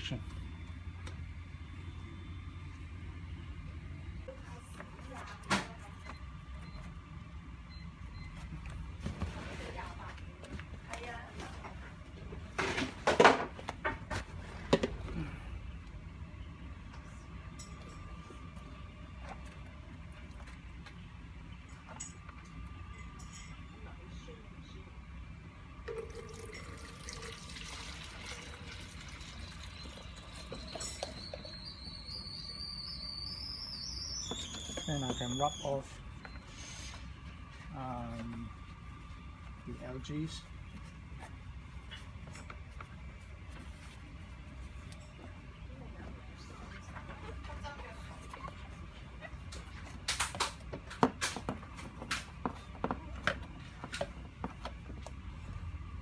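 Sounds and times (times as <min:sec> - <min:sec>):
water running and splashing: 0:26.2 - 0:31.0.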